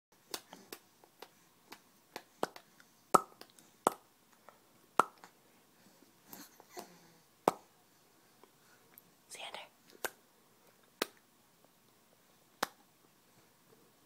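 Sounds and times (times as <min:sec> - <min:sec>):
mouth pops and tongue clicks: 0:00.3 - 0:05.3, 0:09.9 - 0:10.2, 0:10.8 - 0:11.2, 0:12.6 - 0:12.8.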